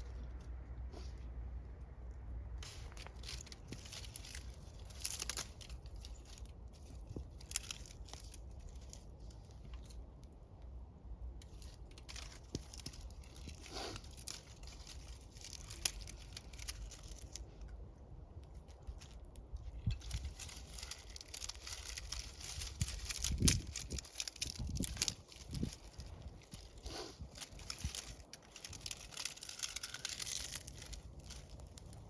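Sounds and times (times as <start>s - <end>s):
bonfire crackling: 11.3s - 32.0s.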